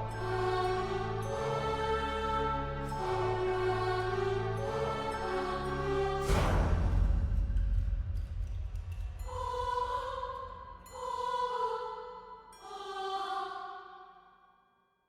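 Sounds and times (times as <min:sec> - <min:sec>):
choir-like held tones: 0:00.0 - 0:07.0, 0:09.2 - 0:14.3
deep low rumble: 0:06.2 - 0:10.8.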